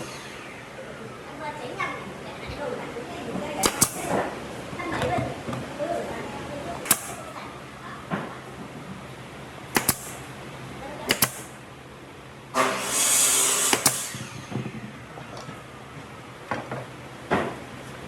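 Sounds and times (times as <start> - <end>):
knocks of wood and tools: 3.6 - 4.2, 9.8 - 10.2, 11.1 - 11.5, 12.6 - 14.7
hissing burst: 6.8 - 7.4, 9.7 - 10.3, 11.1 - 11.6, 12.6 - 14.8.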